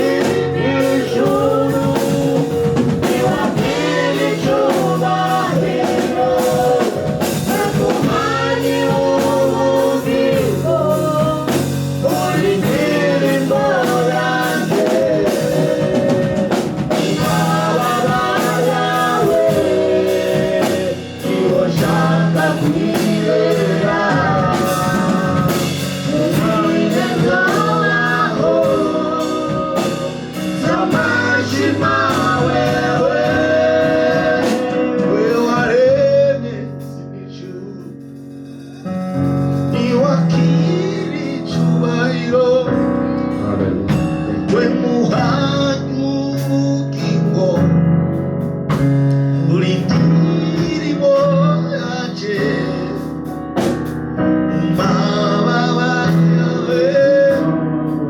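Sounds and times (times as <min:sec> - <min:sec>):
drum beat: 0:00.0 - 0:35.8
voices singing: 0:00.0 - 0:37.8, 0:54.5 - 0:58.0
worship band playing: 0:00.0 - 0:58.0.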